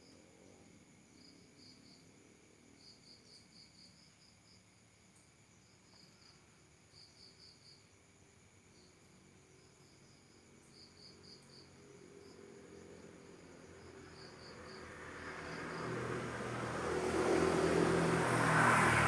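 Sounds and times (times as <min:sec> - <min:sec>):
crickets chirping: 0:00.0 - 0:19.0
vehicle engine passing: 0:13.8 - 0:19.0.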